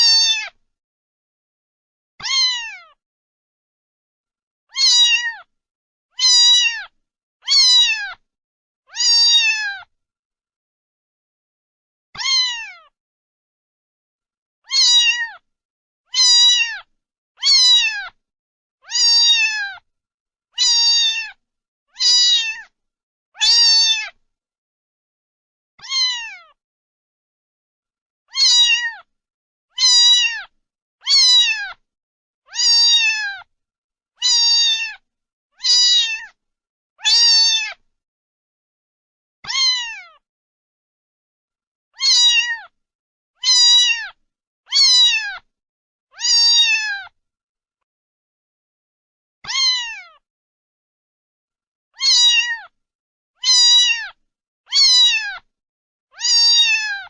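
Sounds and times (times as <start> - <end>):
cat meowing: 0.0 - 0.6, 2.2 - 3.0, 4.7 - 5.5, 6.2 - 8.2, 8.9 - 9.9, 12.2 - 13.0, 14.6 - 15.4, 16.1 - 18.2, 18.8 - 19.8, 20.6 - 21.4, 22.0 - 22.7, 23.4 - 24.2, 25.8 - 26.6, 28.3 - 29.1, 29.7 - 31.8, 32.5 - 33.5, 34.2 - 35.0, 35.6 - 36.4, 37.0 - 37.8, 39.4 - 40.2, 42.0 - 42.8, 43.4 - 45.5, 46.1 - 47.2, 49.4 - 50.2, 52.0 - 52.8, 53.4 - 55.5, 56.1 - 57.0.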